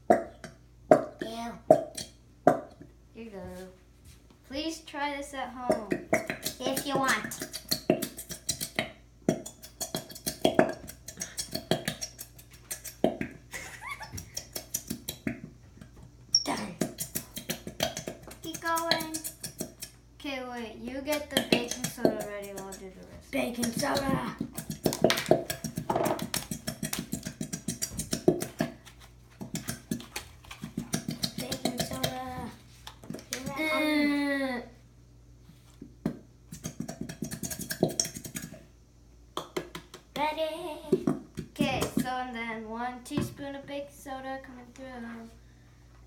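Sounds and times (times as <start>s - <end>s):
glue being stirred in bowl: 5.7s - 20.0s, 20.9s - 33.7s, 36.5s - 38.7s.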